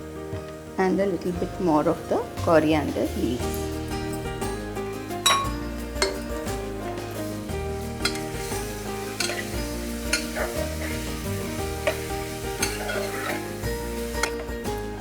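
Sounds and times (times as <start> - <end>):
background music: 0.0 - 15.0
meat sizzling in a pot: 0.0 - 15.0
spoon scraping pot: 8.0 - 14.4.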